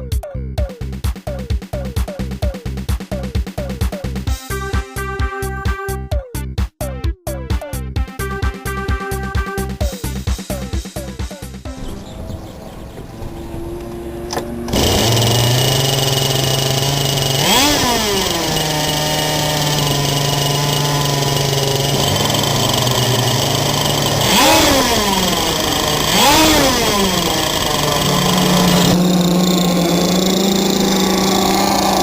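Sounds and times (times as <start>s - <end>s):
two-stroke engines revving: 11.7s - 32.0s.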